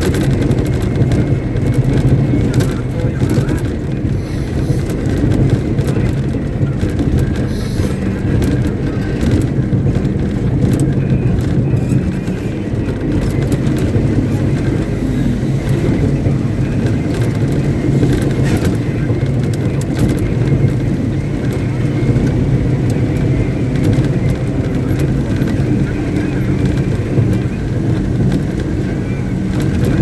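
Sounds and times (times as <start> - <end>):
diesel engine droning: 0.0 - 30.0.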